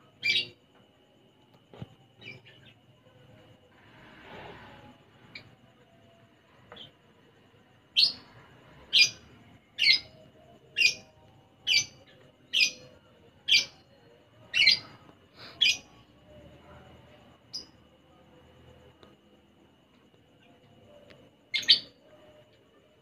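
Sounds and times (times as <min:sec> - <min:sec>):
lovebird loud sharp chirps: 0:09.8 - 0:10.2, 0:21.5 - 0:22.0.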